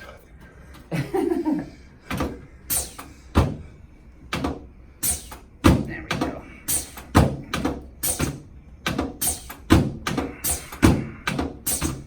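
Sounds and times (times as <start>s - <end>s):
adjusting table thudding: 2.1s - 3.7s.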